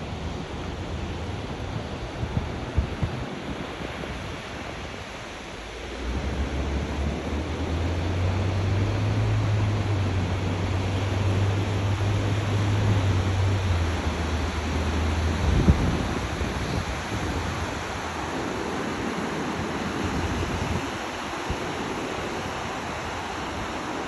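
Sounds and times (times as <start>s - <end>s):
surf: 0.0s - 24.0s
wind: 0.0s - 24.0s
bulldozer diesel engine droning: 5.9s - 16.0s.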